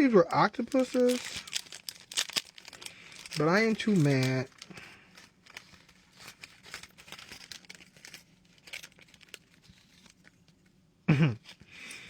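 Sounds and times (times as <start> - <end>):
packaging crinkling and rustling: 0.2 - 10.8.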